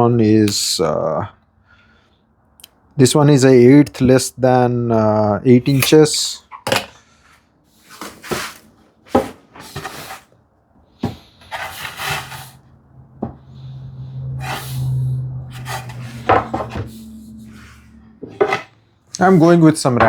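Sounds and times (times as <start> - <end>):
wooden boards knocking and scraping: 7.9 - 10.3, 15.6 - 16.9, 18.2 - 18.7
low steady hum: 10.6 - 20.0.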